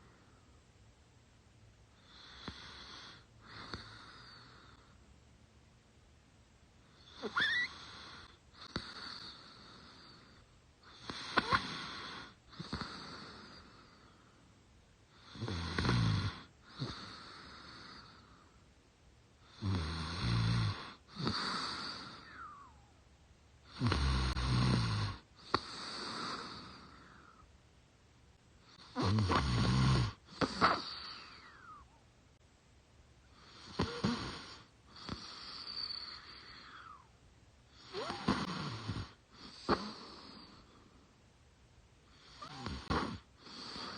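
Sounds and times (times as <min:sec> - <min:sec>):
woman snoring: 0:02.0 - 0:04.9, 0:06.9 - 0:14.1, 0:15.2 - 0:18.4, 0:19.4 - 0:22.8, 0:23.7 - 0:27.4, 0:28.7 - 0:31.9, 0:33.4 - 0:37.1, 0:37.7 - 0:40.8, 0:42.1 - 0:43.9.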